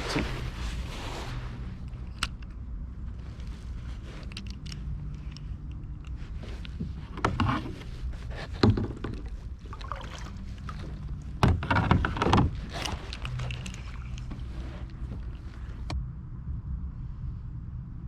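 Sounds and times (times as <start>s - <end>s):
paddle splashing water: 6.8s - 15.9s.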